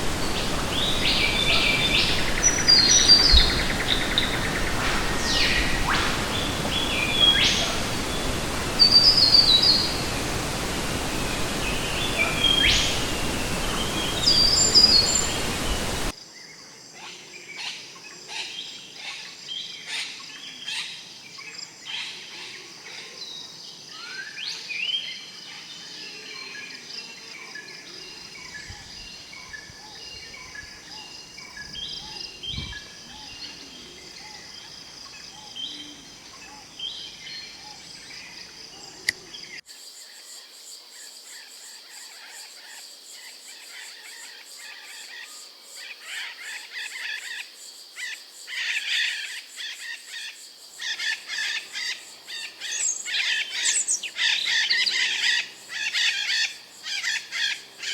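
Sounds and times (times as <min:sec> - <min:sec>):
birds chirping: 0:00.0 - 0:16.1
insects droning: 0:00.0 - 0:57.9.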